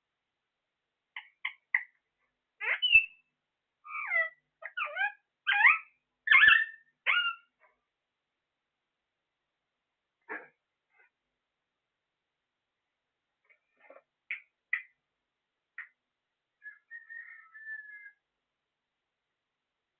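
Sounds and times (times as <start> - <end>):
parrot chirps and squawks: 1.2 - 2.0, 2.6 - 3.2, 3.9 - 7.7, 16.6 - 18.2.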